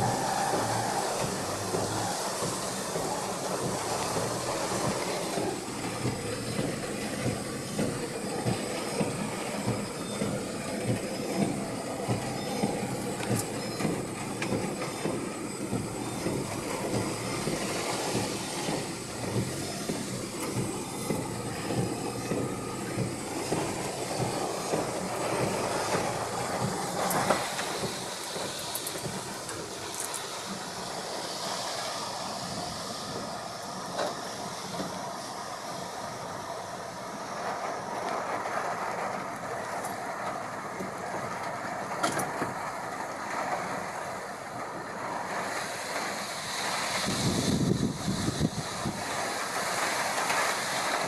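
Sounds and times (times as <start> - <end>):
strong wind roaring in gusts: 43.8 - 51.0.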